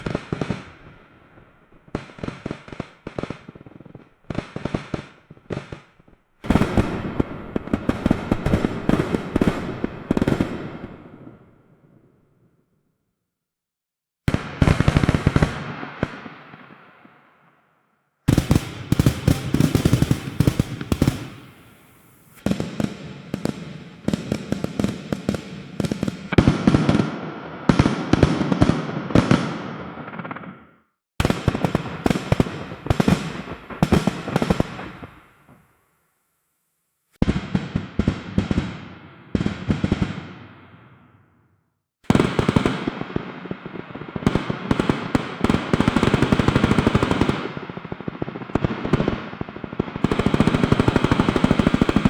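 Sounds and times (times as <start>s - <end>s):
fireworks bangs and crackles: 0.0s - 12.4s, 14.3s - 17.5s, 18.3s - 35.7s, 37.2s - 41.4s, 42.1s - 52.0s.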